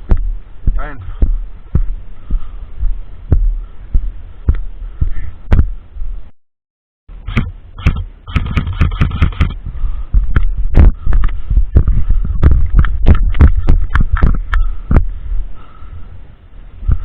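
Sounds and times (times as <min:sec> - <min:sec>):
low rumble on microphone: 0:00.0 - 0:06.3, 0:07.1 - 0:17.0
sharp cracks: 0:07.2 - 0:09.6.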